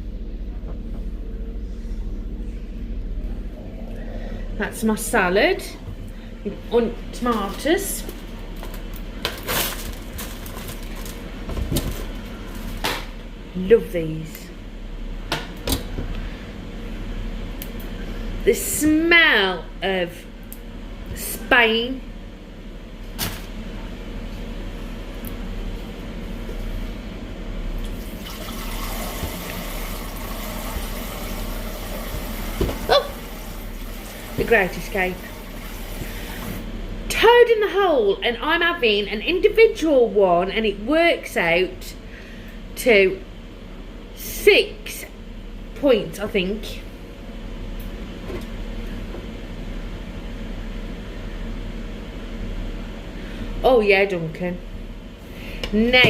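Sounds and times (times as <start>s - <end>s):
appliance fan whirring hum: 0.0s - 56.0s
water running from a tap: 27.9s - 36.6s.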